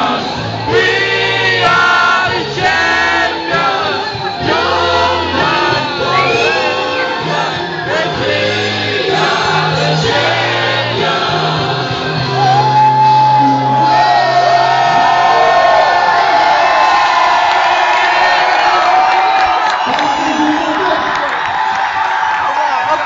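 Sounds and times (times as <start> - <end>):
loud music with singing: 0.0 - 17.3
crowd shouting and whooping: 0.0 - 23.0.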